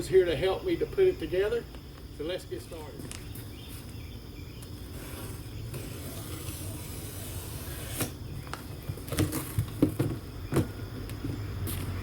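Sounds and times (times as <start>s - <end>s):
low background noise: 0.0s - 12.0s
knocks and thumps: 8.8s - 11.4s.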